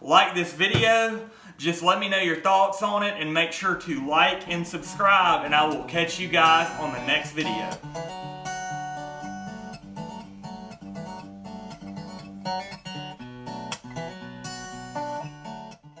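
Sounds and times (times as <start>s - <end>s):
acoustic guitar music: 3.6s - 16.0s.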